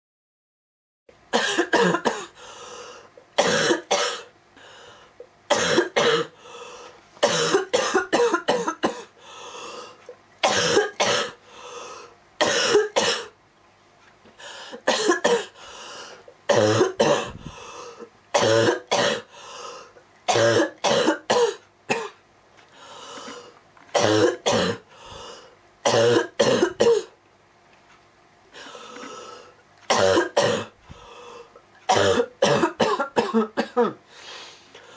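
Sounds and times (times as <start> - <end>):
girl coughing roughly: 1.3 - 2.4, 3.4 - 4.3, 5.5 - 6.4, 7.2 - 9.1, 10.4 - 11.4, 12.4 - 13.3, 14.8 - 15.6, 16.5 - 17.6, 18.4 - 19.3, 20.3 - 22.2, 24.0 - 24.8, 25.9 - 27.2, 29.9 - 30.8, 31.9 - 34.0
soft breaths: 17.3 - 18.1, 30.8 - 31.6.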